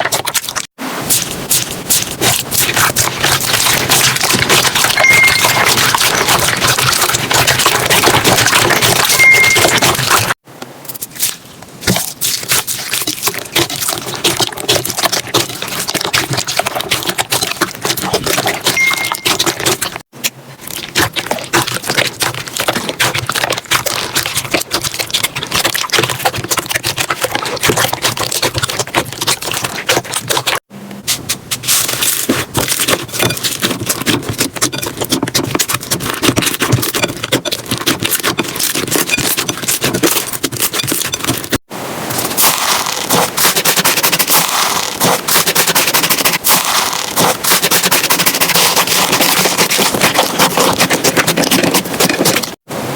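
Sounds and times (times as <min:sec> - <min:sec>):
slime squishing and popping: 0:42.3 - 0:52.5.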